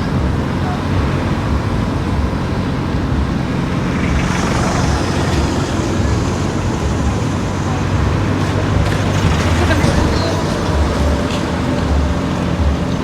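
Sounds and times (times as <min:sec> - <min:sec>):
car engine and tyre noise: 0:00.0 - 0:13.0.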